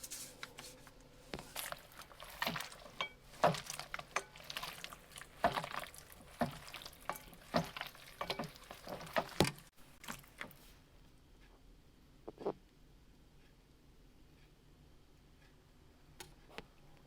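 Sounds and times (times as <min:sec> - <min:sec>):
meat sizzling in hot fat: 0:01.4 - 0:10.5.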